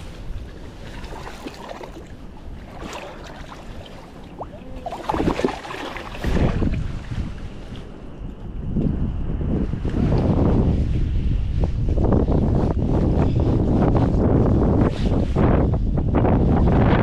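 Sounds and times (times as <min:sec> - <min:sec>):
river water rushing: 0:00.0 - 0:06.6
wind buffeting microphone: 0:00.0 - 0:17.0.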